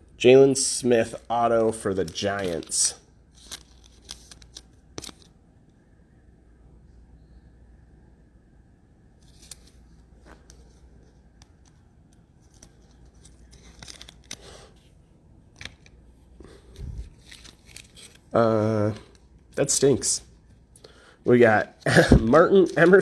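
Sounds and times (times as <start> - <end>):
trading cards clicking and rustling: 1.0 - 5.3, 9.3 - 14.9, 15.5 - 20.2, 20.8 - 23.0.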